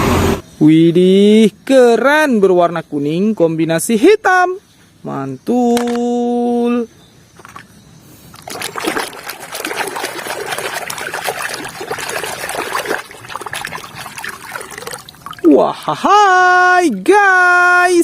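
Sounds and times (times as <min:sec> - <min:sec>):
water splashing and trickling: 0:07.4 - 0:16.0.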